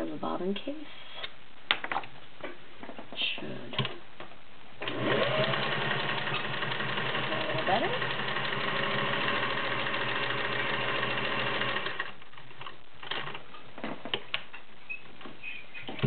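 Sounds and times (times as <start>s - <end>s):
sewing machine running: 4.8s - 12.2s.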